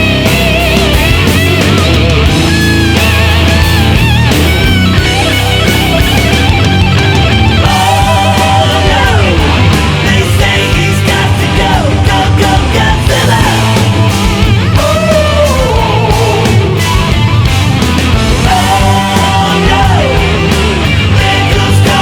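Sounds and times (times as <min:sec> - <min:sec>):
loud rock music: 0:00.0 - 0:22.0.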